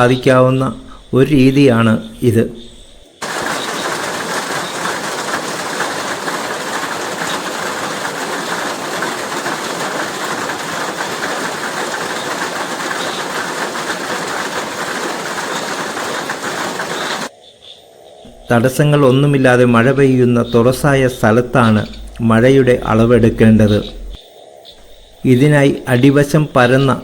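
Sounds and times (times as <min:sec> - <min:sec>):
heavy rain falling: 0:03.2 - 0:17.3.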